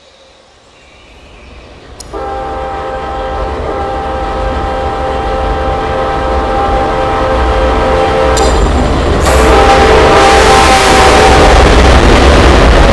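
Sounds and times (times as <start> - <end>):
train rumbling: 0.0 - 12.9
locomotive air horn blast: 2.1 - 12.1.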